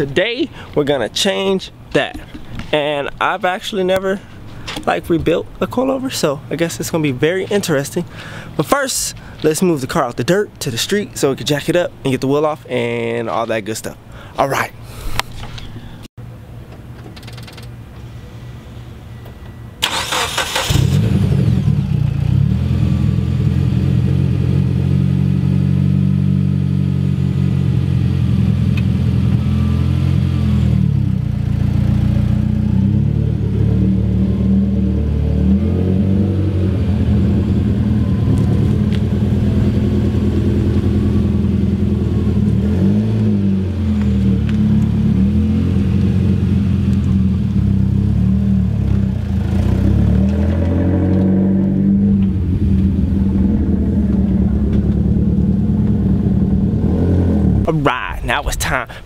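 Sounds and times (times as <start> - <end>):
car engine cranking: 19.8 - 21.8, 52.1 - 57.7
car engine running and revving: 20.7 - 57.7.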